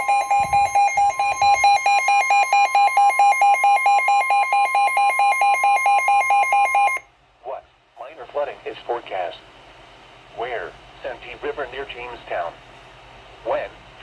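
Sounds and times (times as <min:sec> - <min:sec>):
rapid pulsing electronic beeps: 0:00.0 - 0:07.0
steady alarm tone: 0:00.0 - 0:07.0.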